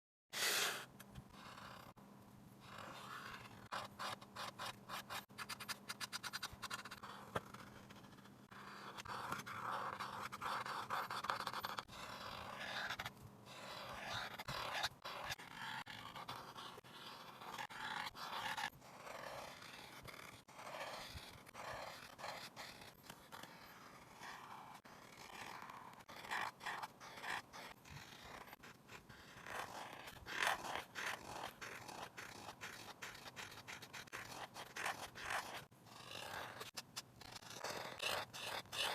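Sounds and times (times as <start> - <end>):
drawing tool scratching: 0.3 - 2.0, 2.6 - 38.9.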